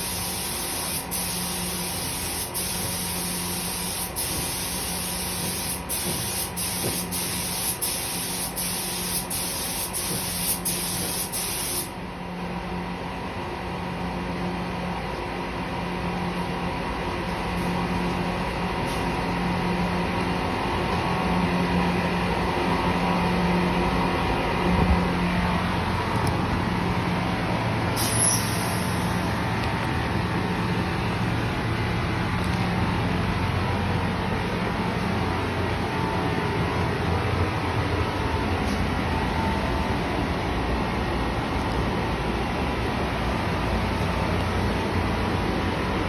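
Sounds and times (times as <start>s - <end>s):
burst of air hiss: 0.0s - 11.9s, 28.0s - 29.3s
air compressor motor running: 0.0s - 12.1s, 17.6s - 46.0s.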